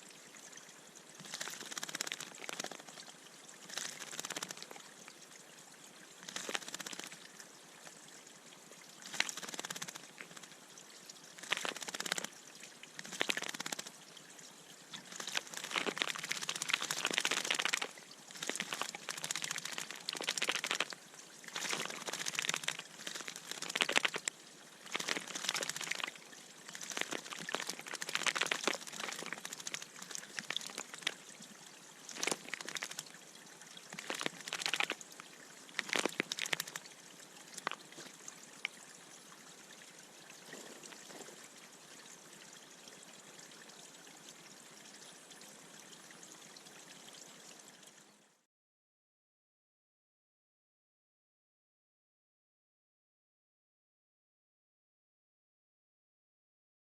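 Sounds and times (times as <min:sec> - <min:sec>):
birds splashing in water: 0:01.2 - 0:03.0, 0:03.6 - 0:04.8, 0:06.2 - 0:07.2, 0:09.0 - 0:10.5, 0:11.4 - 0:12.3, 0:12.9 - 0:13.9, 0:15.0 - 0:31.2, 0:32.1 - 0:33.1, 0:33.9 - 0:35.0, 0:35.7 - 0:36.9.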